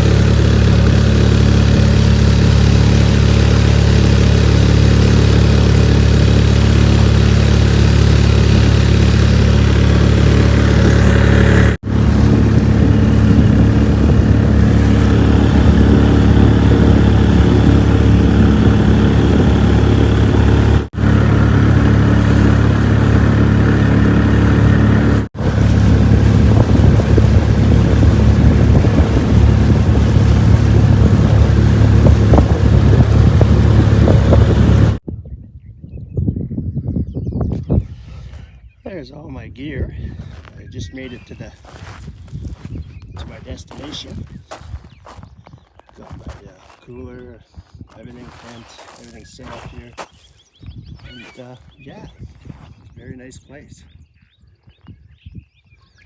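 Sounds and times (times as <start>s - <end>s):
vehicle engine and road drone: 0.0s - 35.0s, 47.8s - 53.3s.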